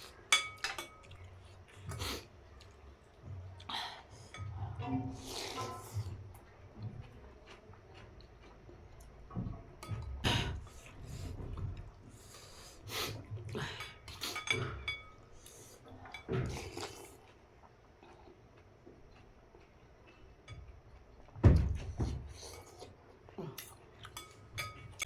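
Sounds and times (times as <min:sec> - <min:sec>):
utensils clinking against a bowl: 0:00.0 - 0:02.8, 0:04.1 - 0:08.0, 0:09.0 - 0:17.2, 0:23.6 - 0:25.0
person slurping and chewing: 0:01.1 - 0:02.8, 0:05.0 - 0:06.4, 0:10.4 - 0:14.6, 0:15.3 - 0:20.4, 0:22.3 - 0:24.4.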